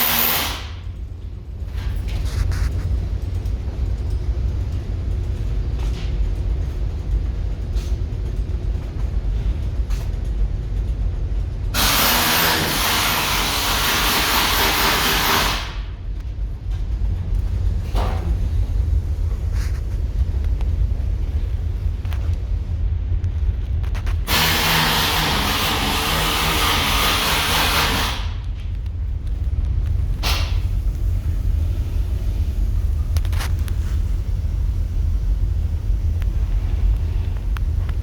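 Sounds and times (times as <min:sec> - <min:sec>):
steady low rumble: 0:00.0 - 0:38.0
loud even hiss: 0:24.3 - 0:28.4.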